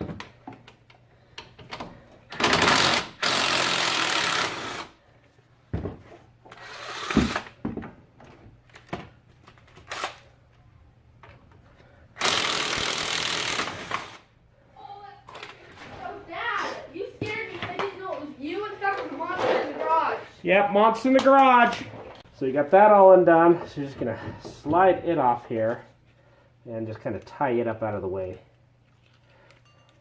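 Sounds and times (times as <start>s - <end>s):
impact wrench running: 2.3s - 5.0s, 6.5s - 7.6s, 12.2s - 14.3s.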